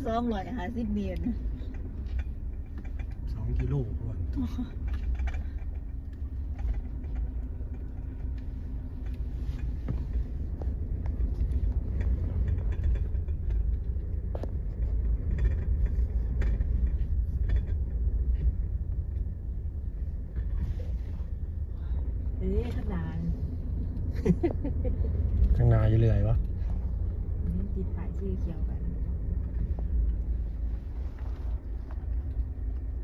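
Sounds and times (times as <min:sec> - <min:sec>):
vehicle low rumble: 0:00.0 - 0:33.0
knocks and rattles: 0:01.6 - 0:20.6.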